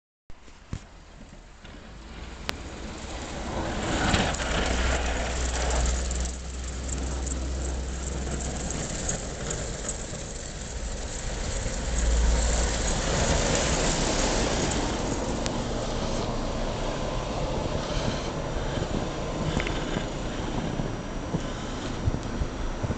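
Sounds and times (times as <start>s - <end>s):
engine droning: 1.4s - 22.9s
rushing noise: 1.7s - 22.9s.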